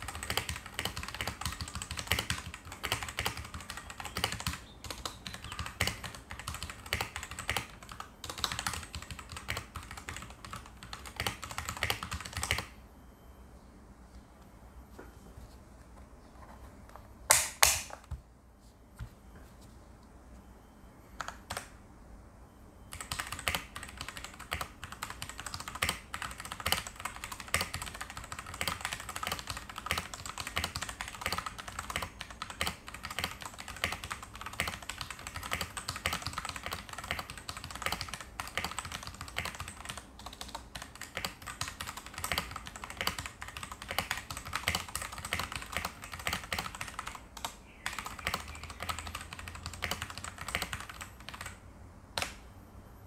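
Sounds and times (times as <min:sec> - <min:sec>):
fast typing on mechanical keyboard: 0:00.0 - 0:12.8, 0:22.9 - 0:51.6.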